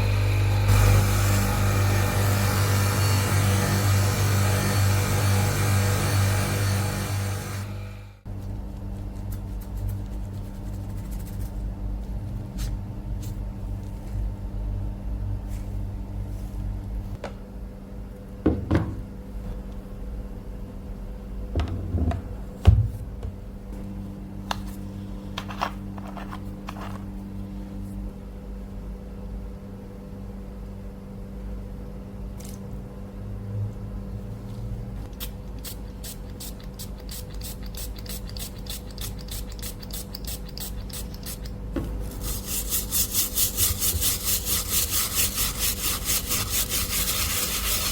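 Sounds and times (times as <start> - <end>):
low machine hum: 0.0 - 47.9
light rubbing strokes: 42.1 - 47.9.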